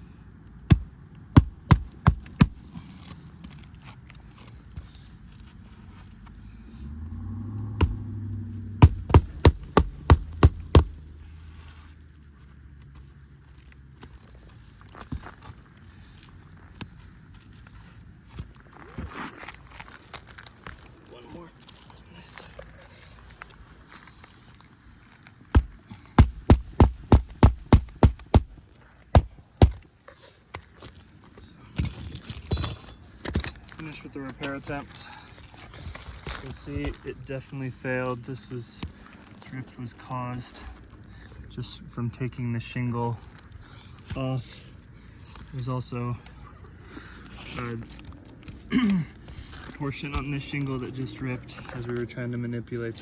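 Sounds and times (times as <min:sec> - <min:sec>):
low steady hum: 0:00.0 - 0:19.0
hammer driving nails: 0:00.7 - 0:02.6, 0:08.8 - 0:11.0, 0:25.5 - 0:28.6, 0:29.2 - 0:29.8.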